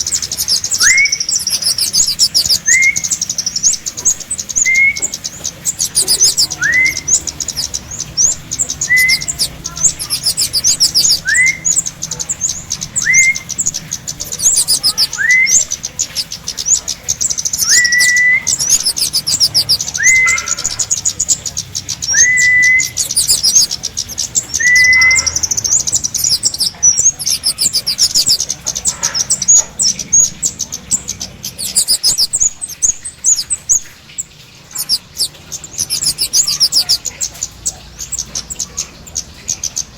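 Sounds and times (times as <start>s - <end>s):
upslurred bird whistle: 0.0s - 11.9s, 12.9s - 16.3s, 17.5s - 21.1s, 22.0s - 28.5s, 31.4s - 33.8s, 34.8s - 37.0s
rapid high bird chirping: 0.0s - 39.9s.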